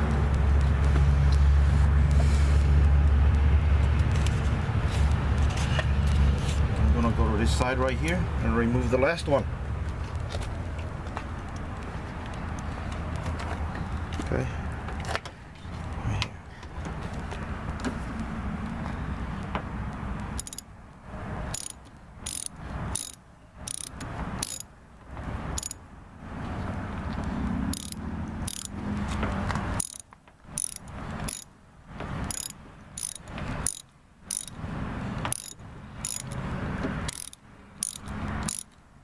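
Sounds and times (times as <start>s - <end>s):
ratchet wrench clicking: 20.4s - 20.7s, 21.5s - 24.7s, 25.5s - 25.8s, 27.7s - 28.8s, 29.8s - 31.5s, 32.3s - 34.6s, 35.2s - 36.4s, 37.0s - 38.8s.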